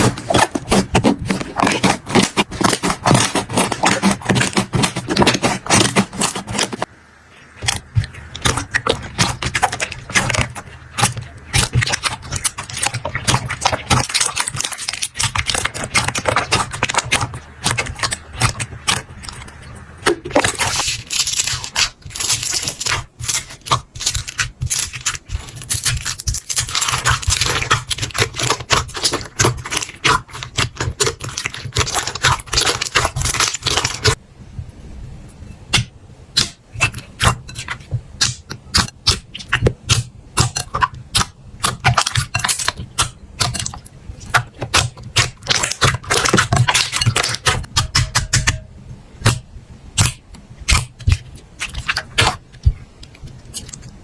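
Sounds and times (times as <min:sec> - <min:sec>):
slime scraping: 0:00.0 - 0:34.2, 0:36.4 - 0:48.6, 0:50.0 - 0:54.0
slime crackling and clicking: 0:07.6 - 0:34.2, 0:36.4 - 0:48.6.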